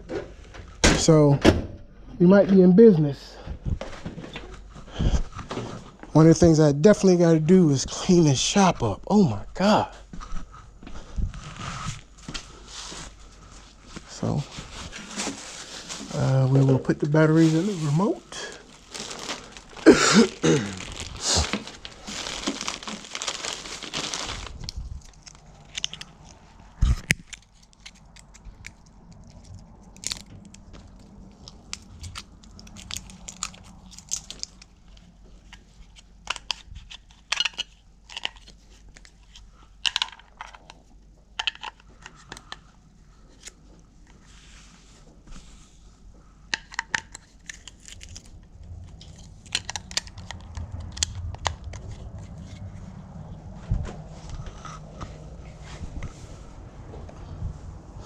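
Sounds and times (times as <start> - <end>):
plastic packaging crinkling and tearing: 14.0 - 40.8, 46.6 - 52.7
batteries clicking and rattling: 18.6 - 26.4, 27.0 - 34.8, 35.4 - 40.8, 41.4 - 42.7, 46.5 - 51.9.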